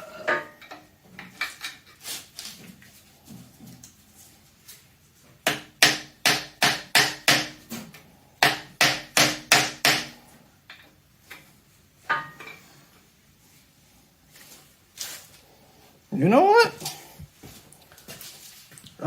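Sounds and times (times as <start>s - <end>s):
hammer striking metal: 5.5s - 7.6s, 8.4s - 10.2s.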